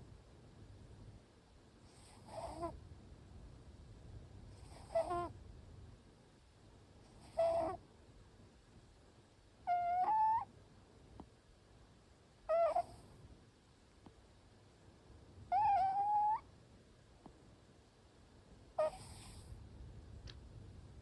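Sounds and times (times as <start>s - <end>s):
cat snoring with whistle: 1.9s - 2.8s, 4.6s - 5.3s, 7.2s - 7.8s, 12.5s - 13.2s, 18.8s - 19.6s.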